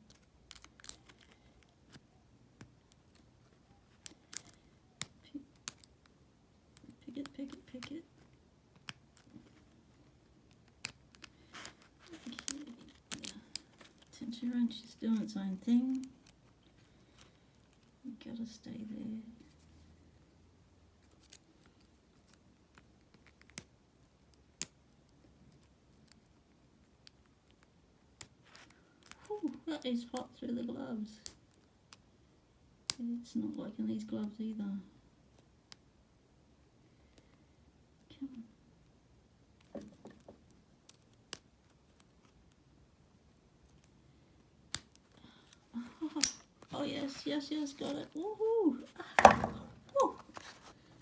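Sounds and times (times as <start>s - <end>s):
lock pick scraping: 46.0s - 47.1s
lock pick clicking in padlock: 46.2s - 46.5s.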